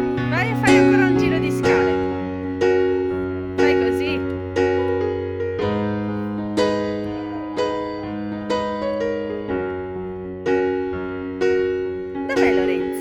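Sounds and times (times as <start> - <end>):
piano playing slow chords: 0.0 - 13.0.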